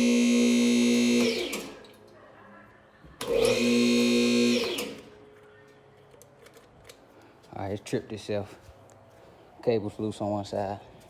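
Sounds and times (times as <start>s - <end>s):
electric motor humming and winding down: 0.0s - 1.7s, 3.3s - 5.0s.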